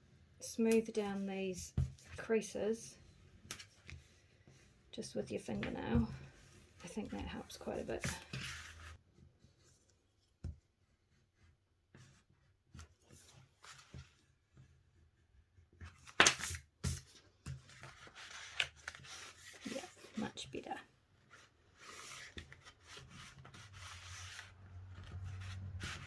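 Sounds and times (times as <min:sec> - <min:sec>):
paper rustling: 0:15.9 - 0:20.4, 0:21.3 - 0:26.0.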